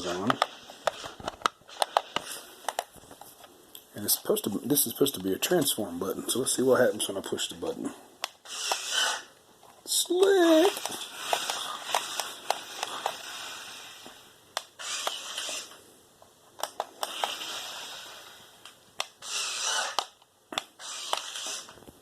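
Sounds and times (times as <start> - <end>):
toy car motors whirring: 0.0 - 2.8, 8.3 - 9.3, 10.2 - 15.8, 16.7 - 21.8.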